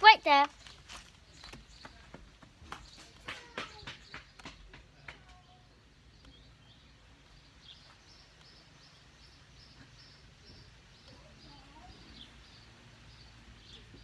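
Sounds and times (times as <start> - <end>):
outdoor background noise: 0.0 - 14.0
faint bird chirping: 5.3 - 14.0.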